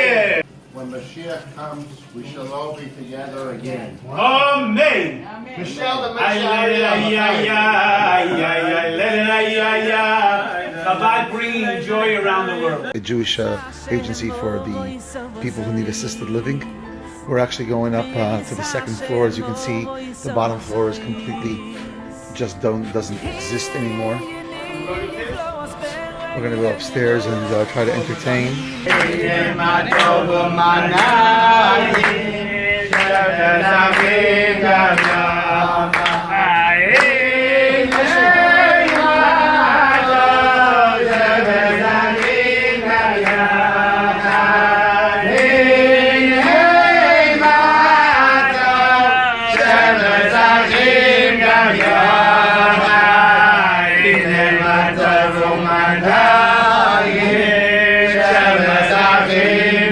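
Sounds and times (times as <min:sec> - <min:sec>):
group singing a chant-like melody: 0:06.2 - 0:59.9
low accompanying tone: 0:12.9 - 0:47.5.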